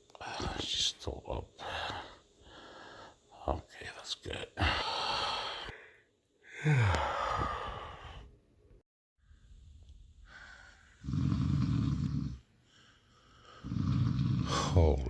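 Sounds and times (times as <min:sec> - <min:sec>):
person snoring: 0:06.4 - 0:08.3, 0:10.6 - 0:12.5, 0:13.2 - 0:15.0.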